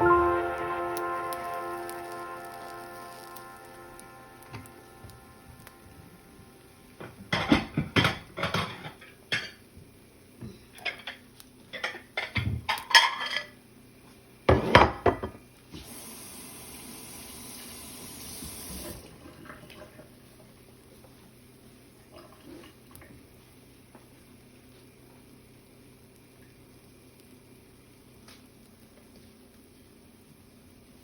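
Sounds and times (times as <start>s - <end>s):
dishes and cutlery clattering: 7.3s - 9.6s, 11.8s - 13.6s.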